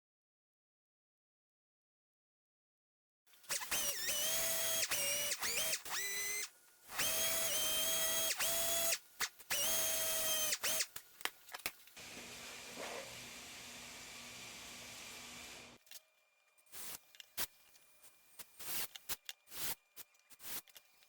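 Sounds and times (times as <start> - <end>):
power drill whine: 3.5 - 10.9.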